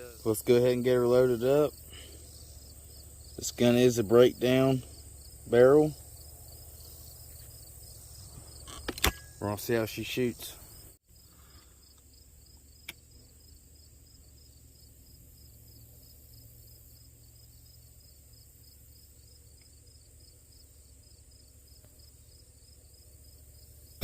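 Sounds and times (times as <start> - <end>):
insects chirping faintly: 0.0 - 24.0
small click: 12.8 - 13.0.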